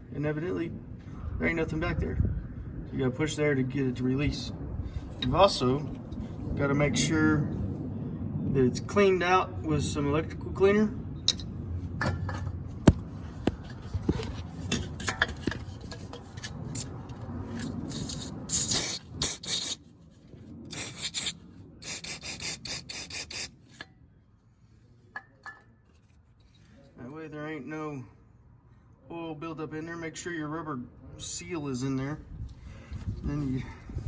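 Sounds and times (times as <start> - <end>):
handling and rubbing noises: 12.5 - 23.9
aerosol can spraying: 18.0 - 19.8, 20.7 - 23.5.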